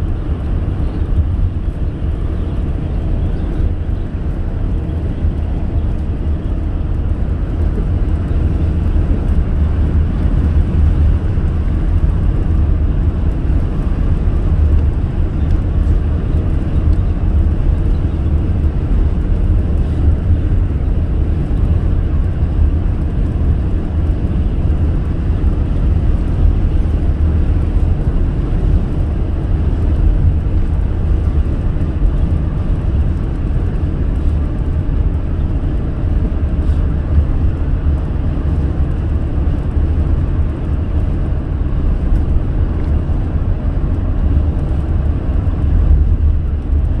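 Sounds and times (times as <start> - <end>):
car tyre and engine rumble: 0.0 - 47.0.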